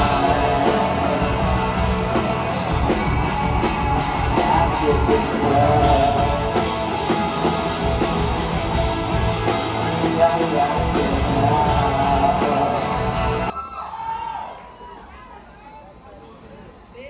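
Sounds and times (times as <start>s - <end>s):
guitar: 0.0s - 13.5s
live rock band playing: 0.0s - 13.5s.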